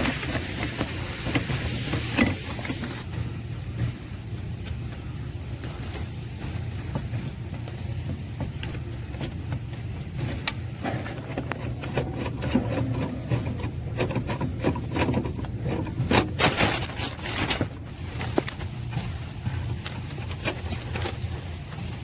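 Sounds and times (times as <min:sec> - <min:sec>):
steady low hum: 0:00.0 - 0:22.0
tools scraping plastic: 0:07.7 - 0:21.3.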